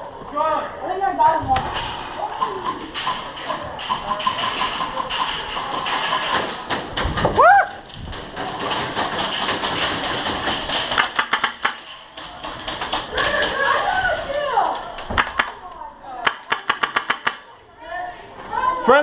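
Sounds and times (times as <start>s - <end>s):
airsoft guns firing indoors: 1.6s - 14.3s, 15.1s - 17.6s.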